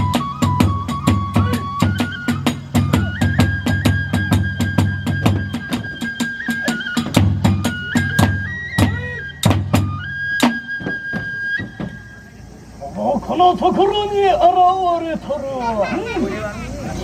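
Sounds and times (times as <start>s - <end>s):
drum strikes: 0.0s - 12.5s
transverse flute long high notes: 0.0s - 15.4s.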